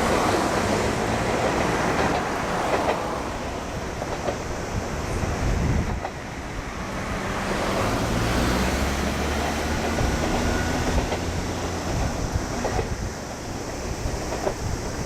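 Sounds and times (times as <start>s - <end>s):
train passing: 0.0s - 15.0s
wheel clicks over rail joints: 0.1s - 3.2s, 3.9s - 4.6s, 8.5s - 15.0s.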